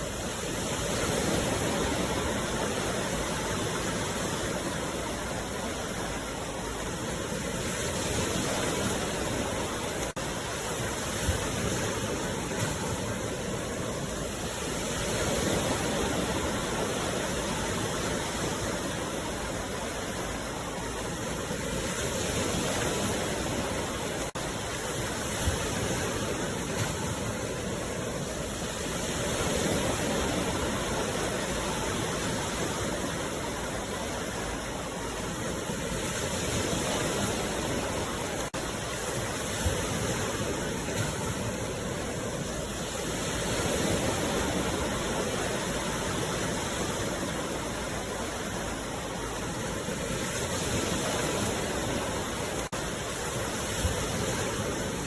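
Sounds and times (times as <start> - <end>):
sea waves washing ashore: 0.0 - 55.0.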